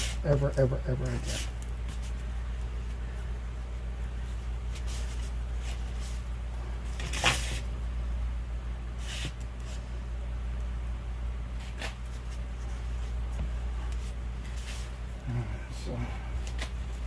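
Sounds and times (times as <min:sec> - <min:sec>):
steady low hum: 0:00.0 - 0:17.0
scraping and rustling handling noises: 0:11.5 - 0:15.2.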